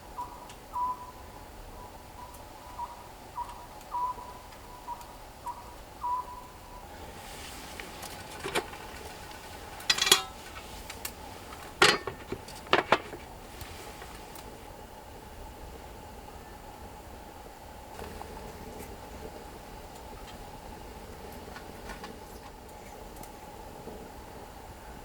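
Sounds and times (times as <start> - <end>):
dishes and utensils clattering: 7.8 - 14.2.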